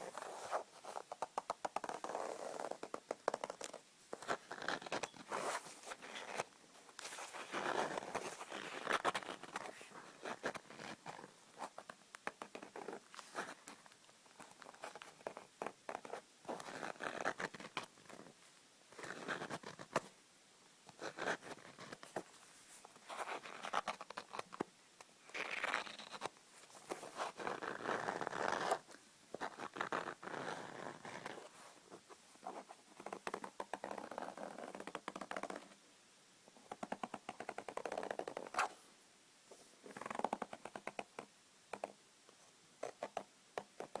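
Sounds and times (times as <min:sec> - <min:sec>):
hand scratching and scraping: 0:00.0 - 0:18.3.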